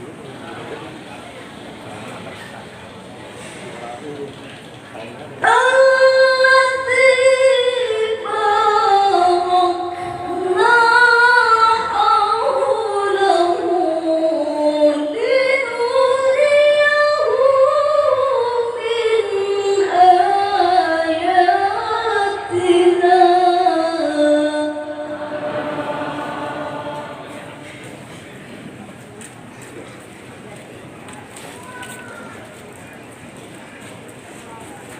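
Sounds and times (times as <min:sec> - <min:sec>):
person reciting melodically: 0:05.4 - 0:28.2.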